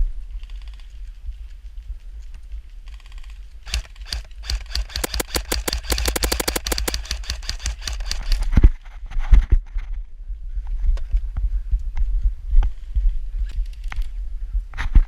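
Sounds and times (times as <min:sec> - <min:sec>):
airsoft gun full-auto burst: 0:03.7 - 0:08.4.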